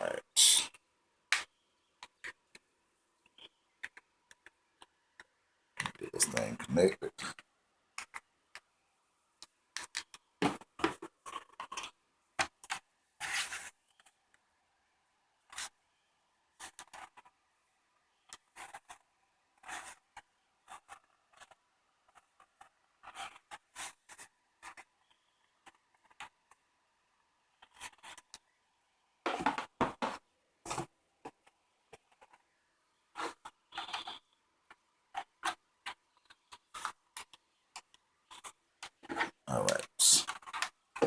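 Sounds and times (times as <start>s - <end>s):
plastic clicks taps and scrapes: 1.3s - 6.0s, 7.2s - 8.7s, 9.4s - 12.8s.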